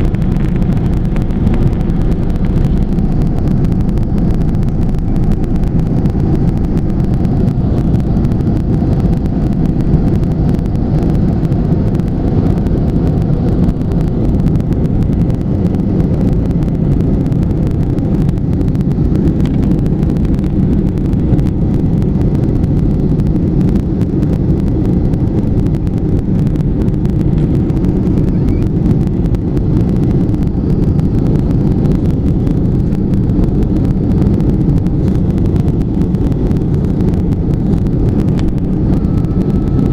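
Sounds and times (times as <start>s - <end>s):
aeroplane cabin drone: 0.0s - 39.9s.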